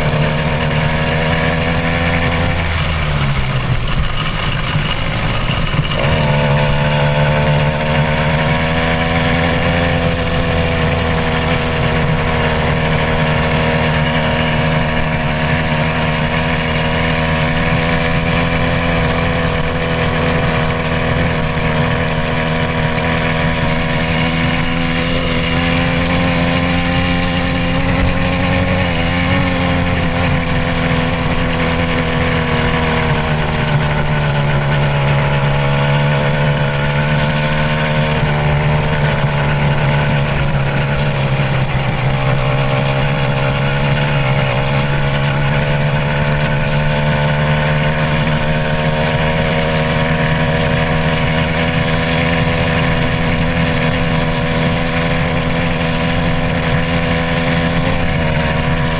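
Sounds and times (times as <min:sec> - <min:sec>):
two-stroke engine running: 0:00.0 - 0:58.9.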